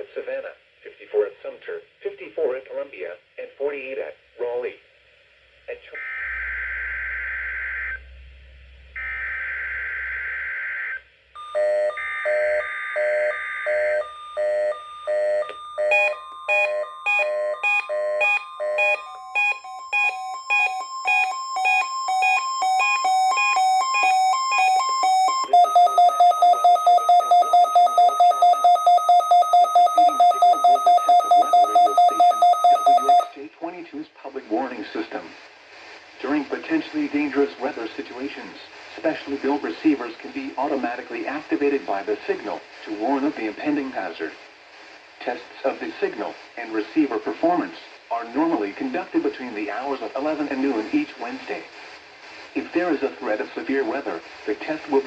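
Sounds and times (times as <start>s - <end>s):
weather radio alarm beeping: 5.9s - 8.0s, 9.0s - 33.4s
steady warning tone: 5.9s - 33.3s.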